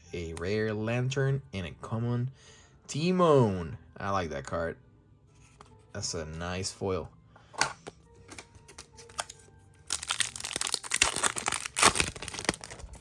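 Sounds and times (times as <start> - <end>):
wrapper crinkling and tearing: 8.7 - 13.0.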